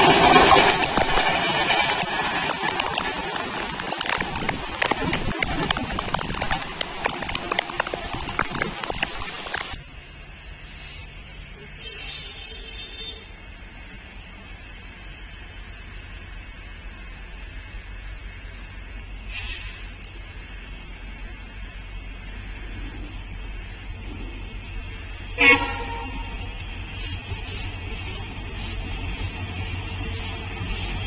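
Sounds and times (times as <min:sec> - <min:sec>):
train horn blast: 0:25.4 - 0:26.6.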